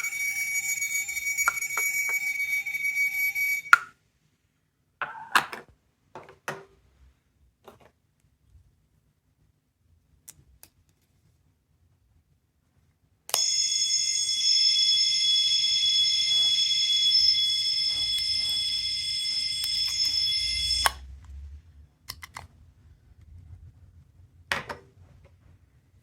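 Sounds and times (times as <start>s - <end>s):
toy alarm ringing: 0.0s - 3.9s, 13.3s - 21.0s.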